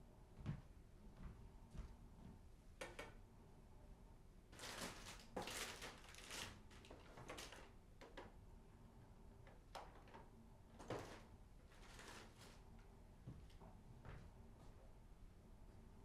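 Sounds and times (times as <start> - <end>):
soft rustling and scraping: 10.8 - 14.8.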